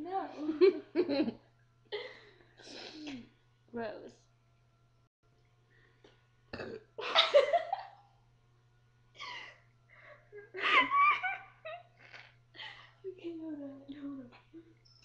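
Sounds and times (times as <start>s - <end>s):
laughter: 0.4s - 1.4s, 7.0s - 8.0s, 10.3s - 12.3s
loud burps: 6.5s - 7.0s.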